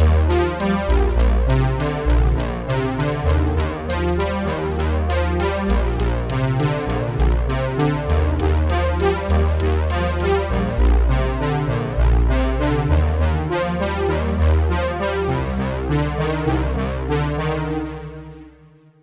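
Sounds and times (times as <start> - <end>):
electronic music with steady beat: 0.0 - 10.6.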